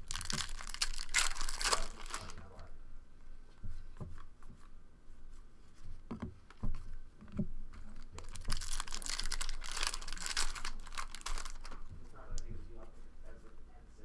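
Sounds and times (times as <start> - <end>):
card pack wrapper tearing and crinkling: 0.0 - 2.6, 8.0 - 11.8.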